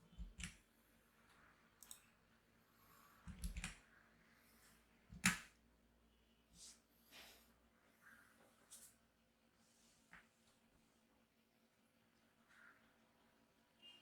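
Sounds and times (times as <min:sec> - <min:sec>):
computer clicks: 0:03.3 - 0:03.8.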